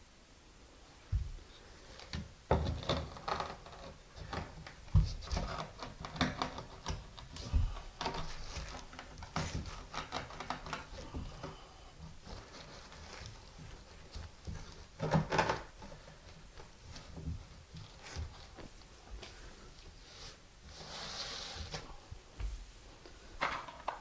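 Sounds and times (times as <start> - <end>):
low thumps: 1.1 - 1.5.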